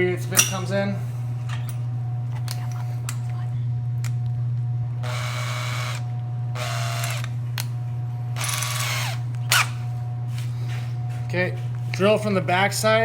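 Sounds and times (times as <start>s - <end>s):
electric drill whine: 4.9s - 10.6s.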